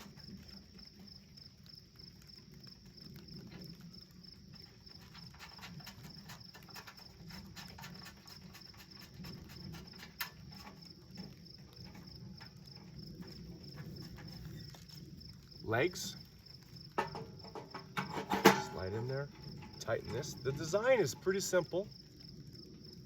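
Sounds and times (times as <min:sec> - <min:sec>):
metal parts clicking and tapping: 0:05.0 - 0:12.6, 0:17.0 - 0:21.5.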